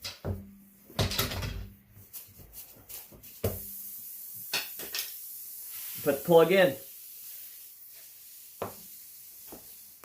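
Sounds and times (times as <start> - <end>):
air hissing from tire: 3.0 - 10.0.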